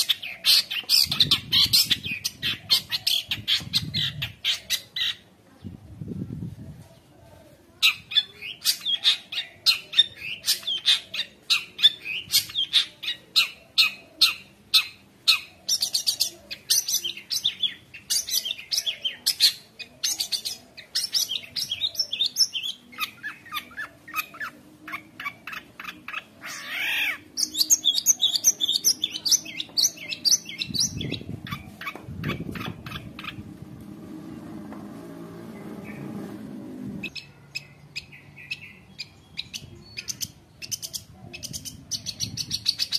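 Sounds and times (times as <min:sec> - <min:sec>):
shrike singing: 0:07.9 - 0:33.7.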